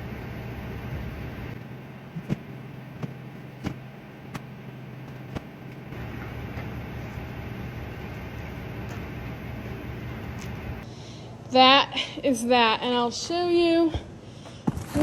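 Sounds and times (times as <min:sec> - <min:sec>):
vehicle engine running: 0:00.0 - 0:10.8.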